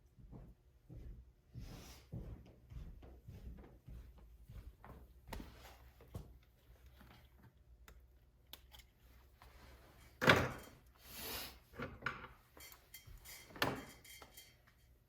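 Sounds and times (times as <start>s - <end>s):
small clicks of parts: 7.8s - 9.0s.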